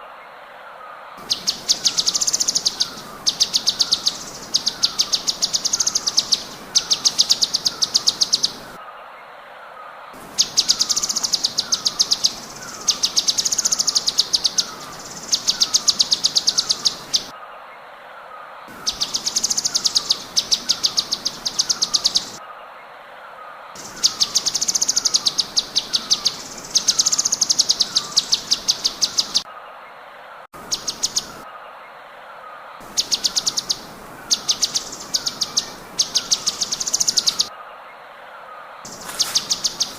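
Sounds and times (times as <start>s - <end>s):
bird singing rapid sharp notes: 1.2s - 8.8s, 10.2s - 17.3s, 18.7s - 22.4s, 23.8s - 29.5s, 30.6s - 31.4s, 32.8s - 37.5s, 38.9s - 39.9s
soft falling bird chirp: 38.9s - 39.9s.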